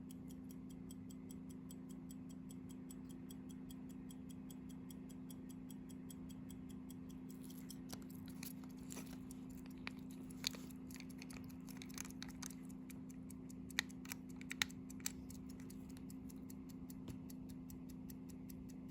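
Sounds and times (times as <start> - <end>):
pocket watch ticking: 0.0 - 18.9
irregular clicks and taps: 7.2 - 18.9.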